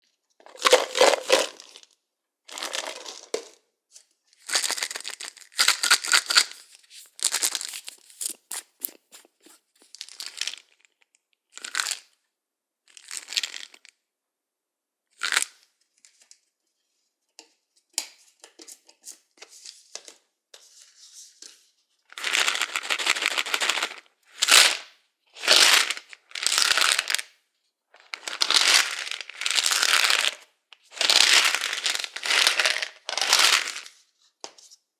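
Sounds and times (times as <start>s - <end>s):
pills rattling in bottles: 0.4s - 1.9s, 2.5s - 3.6s, 4.4s - 10.8s, 22.1s - 27.3s, 28.0s - 34.0s.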